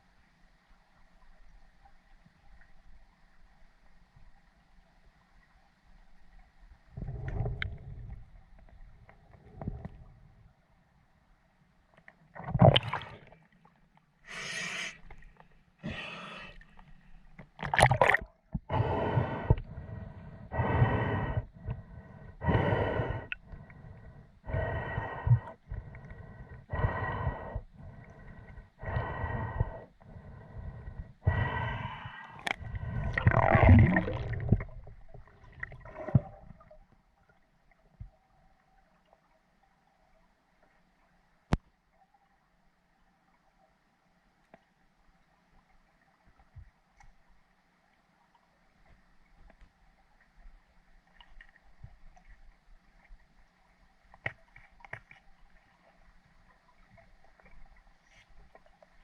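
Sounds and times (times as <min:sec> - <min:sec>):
breathing through a snorkel: 0:14.2 - 0:15.2, 0:15.8 - 0:16.8, 0:18.7 - 0:36.3.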